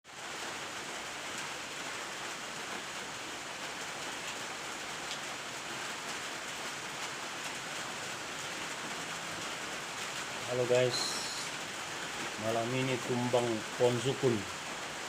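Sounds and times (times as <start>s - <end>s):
steady rain: 0.0s - 15.0s.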